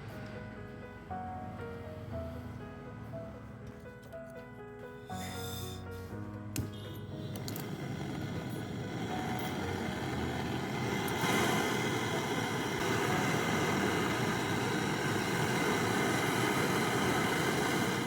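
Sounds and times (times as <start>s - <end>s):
brazing torch flame hissing: 5.1s - 18.0s.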